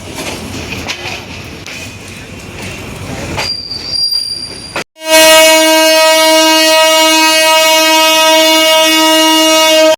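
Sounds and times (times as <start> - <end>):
train air horn blast: 5.0 - 9.9.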